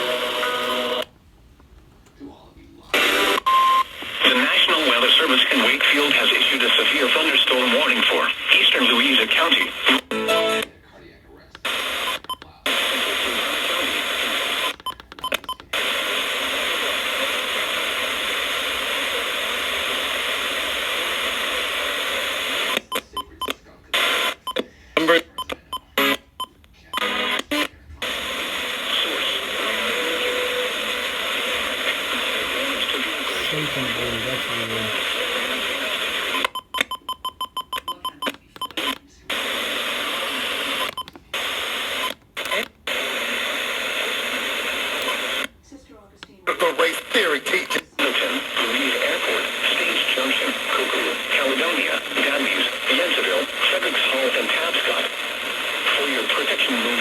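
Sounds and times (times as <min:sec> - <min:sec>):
radio static hiss: 0:00.0 - 0:01.1, 0:02.2 - 0:36.6, 0:37.9 - 0:45.6, 0:46.5 - 0:57.0
static clicks: 0:37.7 - 0:45.5.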